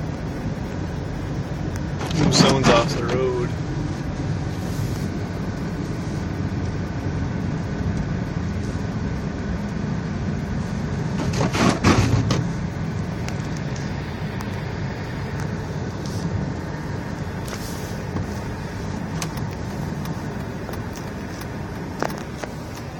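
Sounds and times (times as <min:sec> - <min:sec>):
car engine and road rumble: 0:00.0 - 0:22.9
rushing noise: 0:09.8 - 0:22.9.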